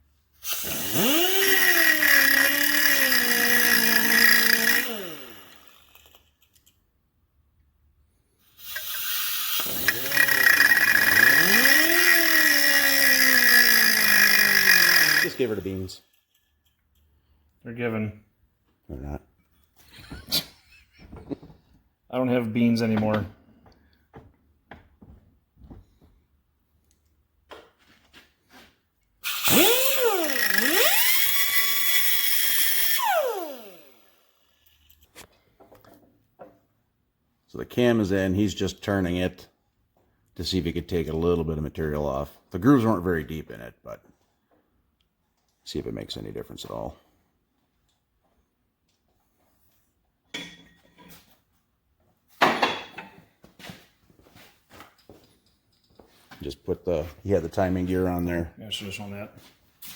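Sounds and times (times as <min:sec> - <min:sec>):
grinder cutting steel: 0:00.4 - 0:06.4, 0:08.4 - 0:16.4, 0:29.2 - 0:35.1.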